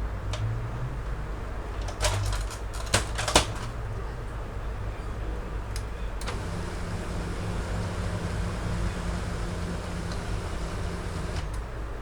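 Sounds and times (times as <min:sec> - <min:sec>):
printer motor humming: 0:06.2 - 0:11.6
printer clicks: 0:06.2 - 0:11.7.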